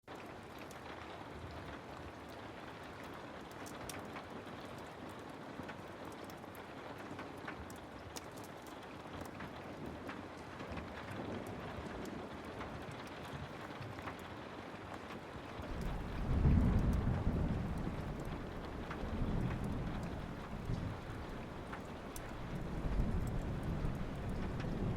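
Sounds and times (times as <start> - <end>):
steady rain: 0.1 - 24.9
distant thunder rumble: 15.6 - 24.9.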